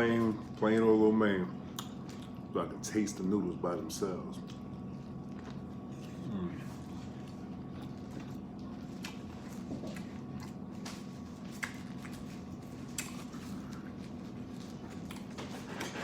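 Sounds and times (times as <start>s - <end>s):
electric fan humming: 0.0s - 16.0s
wet chewing and smacking: 1.6s - 2.6s, 4.0s - 16.0s.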